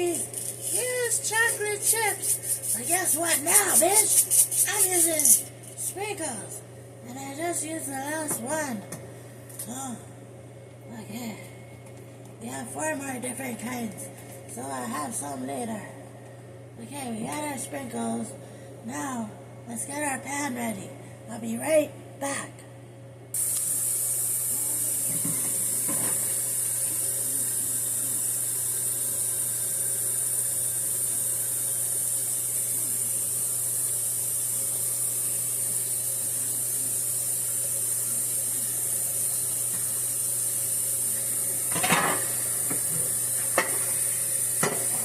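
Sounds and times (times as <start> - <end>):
water hissing at sink: 23.4 - 45.0
dishes clinking and clattering: 41.7 - 42.9.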